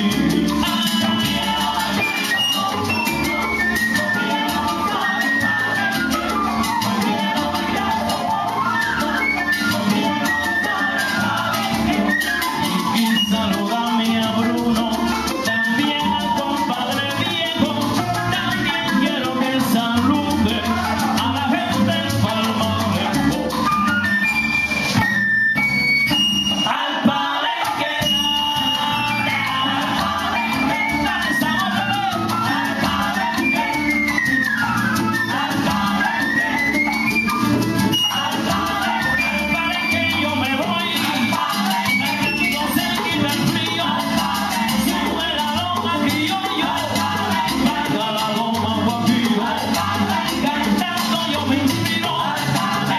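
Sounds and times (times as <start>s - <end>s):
maracas shaken: 0.0s - 52.9s
son band playing: 23.5s - 52.8s.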